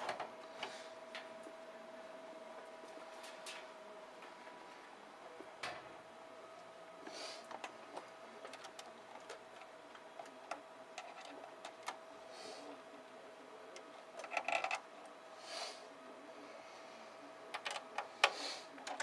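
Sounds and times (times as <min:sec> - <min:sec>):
hardware clicks and rattles: 0:07.4 - 0:12.0, 0:13.7 - 0:15.1, 0:17.5 - 0:19.0.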